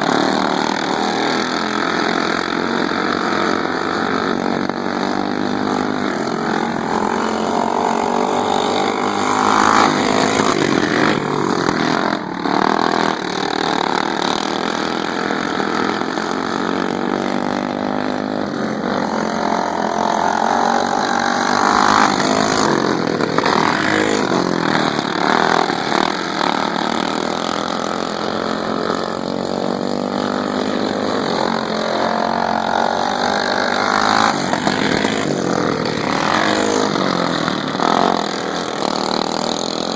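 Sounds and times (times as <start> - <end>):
lawn mower engine running hard: 0.0 - 39.9.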